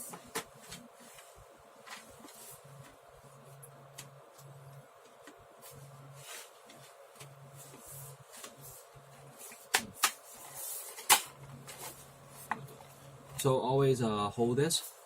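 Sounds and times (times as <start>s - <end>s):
faint rustling and scraping: 5.6s - 11.1s.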